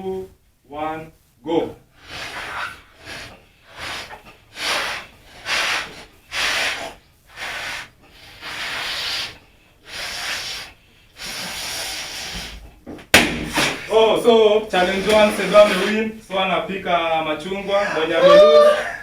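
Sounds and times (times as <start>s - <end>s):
people blowing up balloons: 2.0s - 12.8s, 13.4s - 13.9s, 14.8s - 16.0s, 18.2s - 19.0s.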